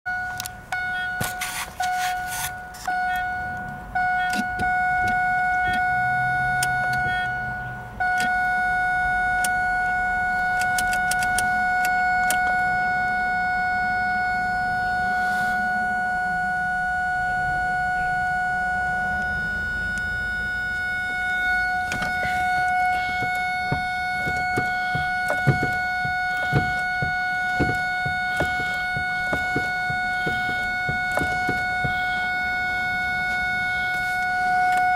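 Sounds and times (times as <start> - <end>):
car warning chime constant tone: 0.1 - 34.9
scattered clicks: 10.4 - 12.5.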